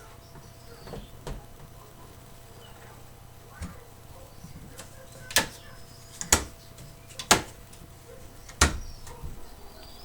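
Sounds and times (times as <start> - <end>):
sharp knocks of cabinet parts: 0.3 - 1.5, 4.4 - 9.4.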